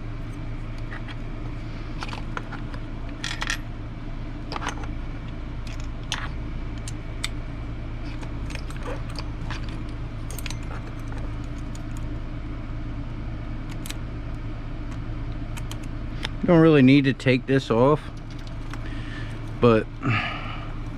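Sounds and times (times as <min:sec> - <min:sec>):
steady low hum: 0:00.0 - 0:20.9
metal tools clicking and clinking: 0:08.1 - 0:12.0.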